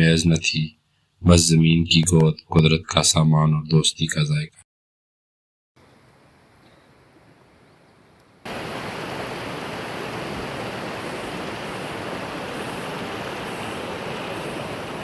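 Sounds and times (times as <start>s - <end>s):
fast-flowing stream rushing: 8.5s - 15.0s.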